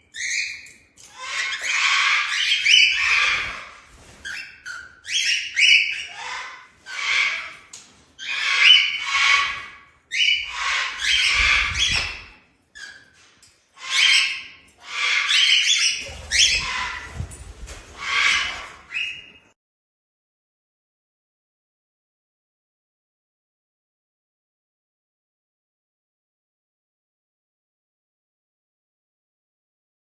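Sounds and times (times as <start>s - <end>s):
cockatoo screeching: 1.1s - 13.0s, 13.8s - 17.3s, 17.9s - 19.3s.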